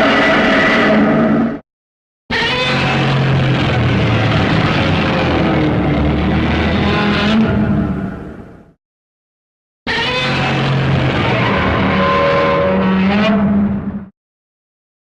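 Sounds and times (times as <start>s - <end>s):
harsh monster roar: 0.0s - 1.6s, 2.3s - 8.3s.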